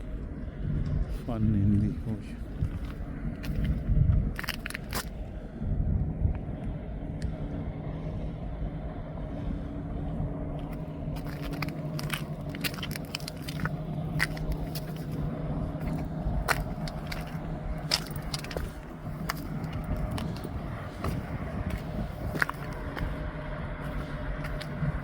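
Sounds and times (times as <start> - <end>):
boat engine humming: 0.0 - 25.0
sharp clicks and crunches: 2.6 - 5.2, 10.6 - 23.1, 23.9 - 24.8.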